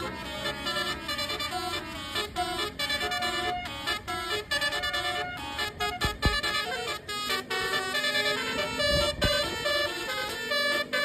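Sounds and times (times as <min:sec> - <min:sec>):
multi-tone vehicle horn tune: 0:00.0 - 0:11.0
low thumps: 0:05.9 - 0:06.6.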